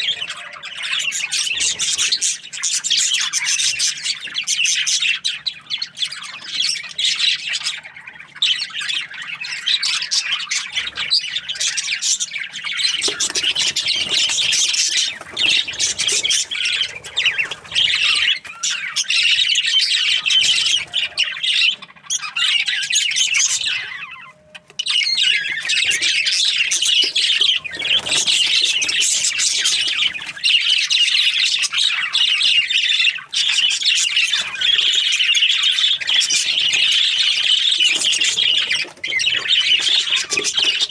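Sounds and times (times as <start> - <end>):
budgerigars chirping: 0.0 - 40.9.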